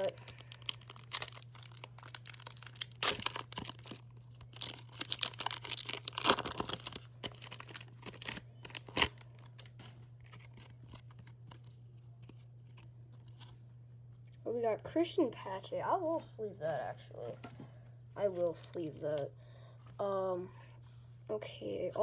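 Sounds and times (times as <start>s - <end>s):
foil wrapper tearing and crinkling: 0.0s - 13.5s
low electrical hum: 0.0s - 22.0s.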